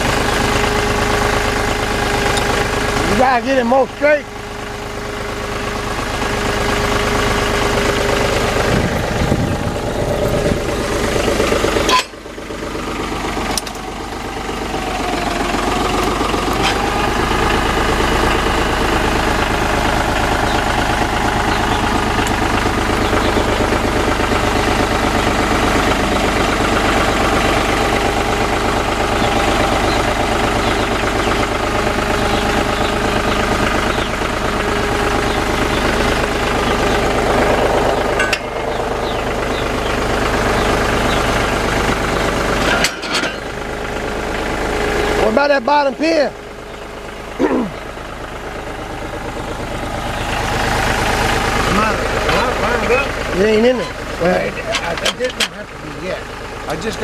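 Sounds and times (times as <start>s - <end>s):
tractor engine idling: 0.0s - 57.0s.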